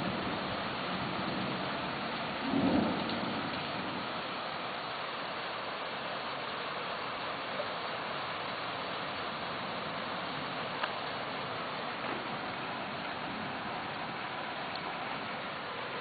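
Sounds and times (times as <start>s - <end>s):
low thunder rumble: 0.0s - 4.2s
heavy rain: 0.0s - 16.0s.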